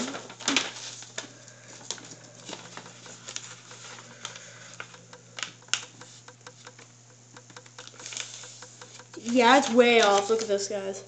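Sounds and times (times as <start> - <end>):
paper being folded and creased: 0.0 - 5.8, 7.8 - 8.6, 9.3 - 10.6
steady low hum: 0.0 - 11.0.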